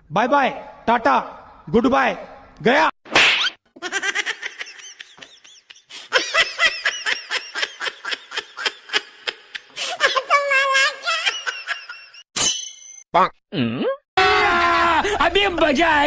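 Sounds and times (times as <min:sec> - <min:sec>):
high-pitched laughter: 0:03.8 - 0:12.2.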